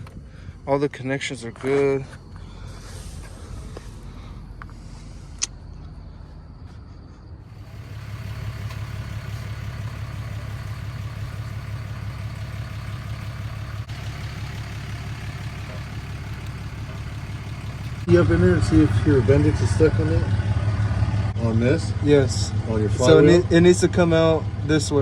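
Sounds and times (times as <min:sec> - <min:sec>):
vehicle engine idling: 0:00.0 - 0:25.0.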